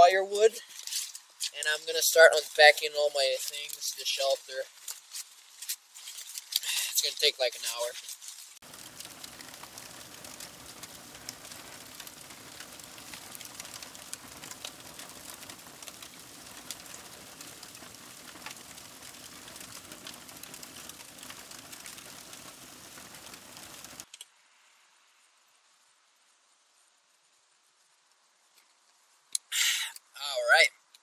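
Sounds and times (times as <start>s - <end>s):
dense crackling clicks: 8.6s - 24.2s
steady hiss: 8.6s - 29.2s.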